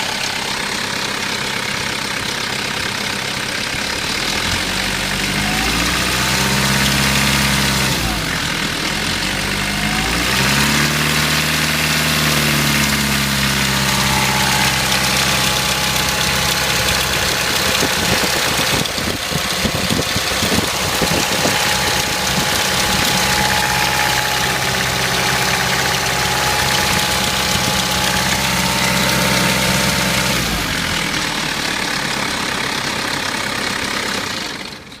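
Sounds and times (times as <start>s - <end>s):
diesel engine running: 0.0s - 35.0s
engine rattle: 0.0s - 35.0s.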